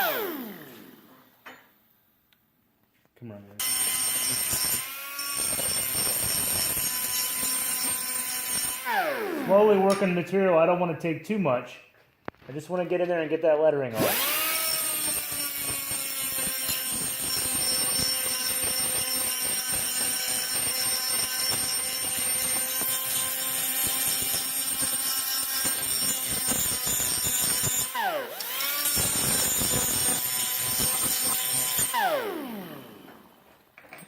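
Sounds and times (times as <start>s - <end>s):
die grinder grinding steel: 0.0s - 1.3s, 3.6s - 10.2s, 14.0s - 34.0s.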